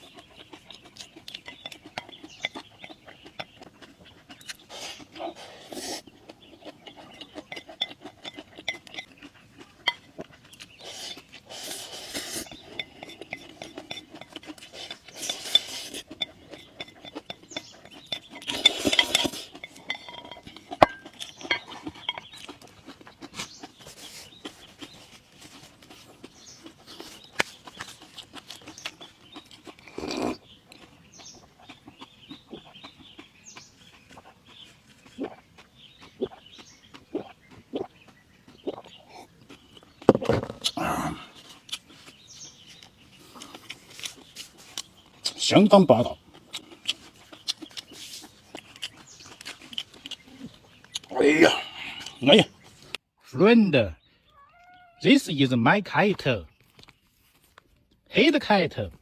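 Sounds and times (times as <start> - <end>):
utensils clinking on a dish: 12.2 - 22.4.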